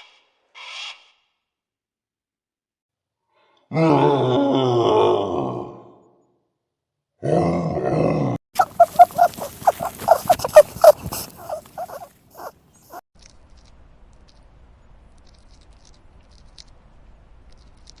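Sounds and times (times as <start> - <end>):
animal squeaking calls: 8.6 - 13.0.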